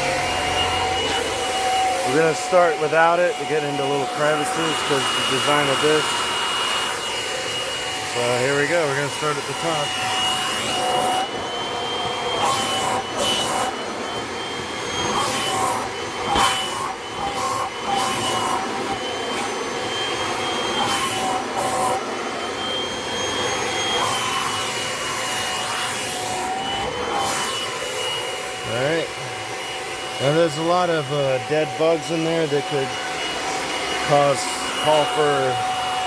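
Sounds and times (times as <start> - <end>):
vacuum hose sucking air: 0.0 - 11.3, 24.0 - 36.0
vacuum cleaner motor whine: 0.0 - 36.0.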